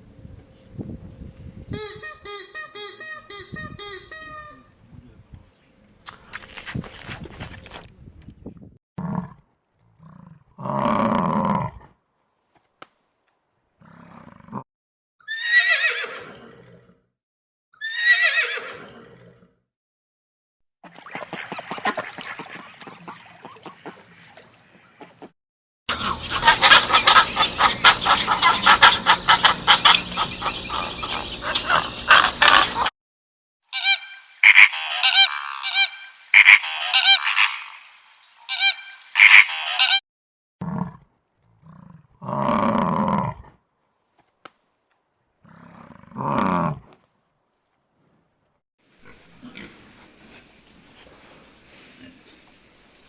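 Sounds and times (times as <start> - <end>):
animal calls: 25.9 - 32.9, 33.7 - 37.8, 38.5 - 40.0.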